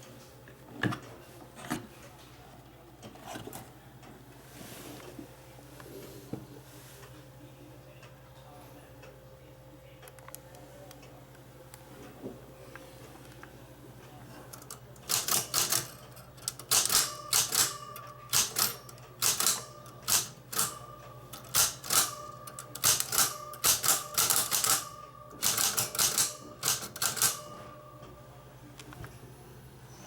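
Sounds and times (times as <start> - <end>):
typewriter keys clattering: 14.6 - 20.7, 21.4 - 24.8, 25.4 - 27.4.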